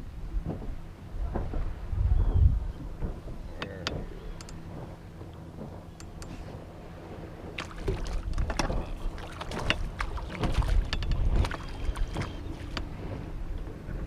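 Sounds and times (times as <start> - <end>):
water slapping boat hull: 0.0 - 14.0
wind rumble on microphone: 0.0 - 14.0
irregular knocks and clicks: 7.6 - 12.9.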